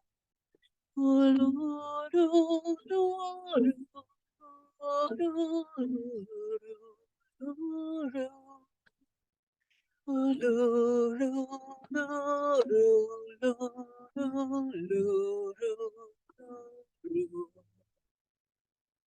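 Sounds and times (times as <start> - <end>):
person singing a slow chant: 1.0 - 8.6, 10.1 - 17.6.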